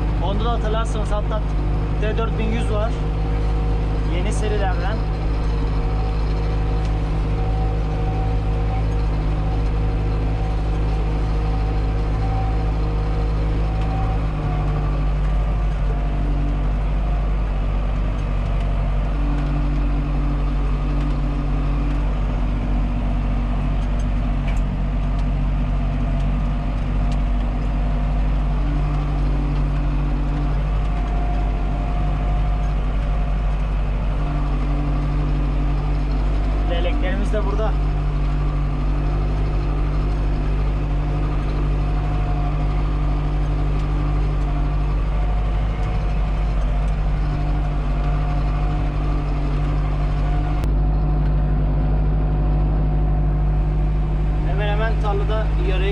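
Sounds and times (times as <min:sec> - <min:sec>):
tractor engine running: 0:00.0 - 0:55.9.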